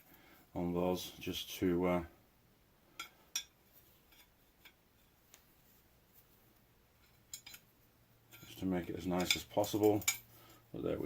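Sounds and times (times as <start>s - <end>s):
faint metallic clicks and clinks: 2.9s - 5.4s, 7.0s - 10.6s.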